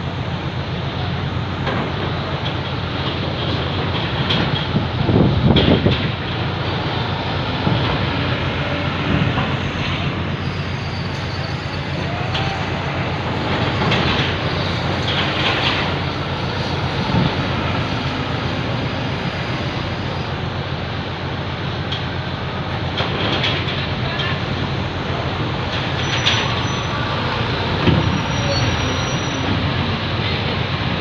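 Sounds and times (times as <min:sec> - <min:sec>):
ship engines rumbling: 0:00.0 - 0:31.0.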